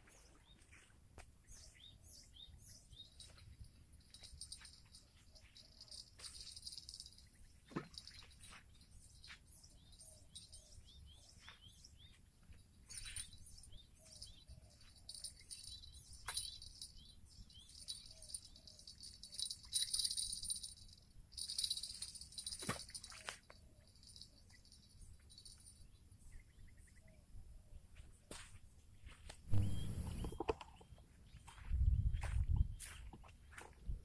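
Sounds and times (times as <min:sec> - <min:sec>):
birds whistling and chirping: 0:12.9 - 0:23.1, 0:29.5 - 0:33.0.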